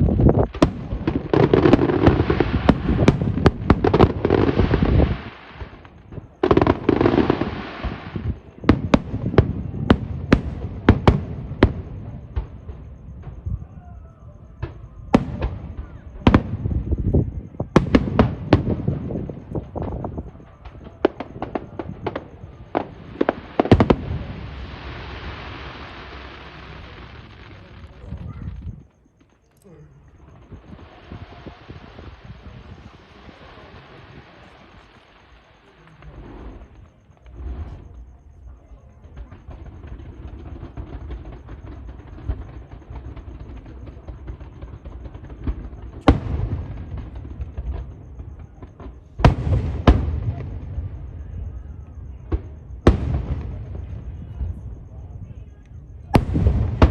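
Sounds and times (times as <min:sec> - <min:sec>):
fireworks hiss: 0:00.0 - 0:11.2, 0:18.0 - 0:28.8, 0:30.1 - 0:37.9
fireworks bangs: 0:00.0 - 0:56.9.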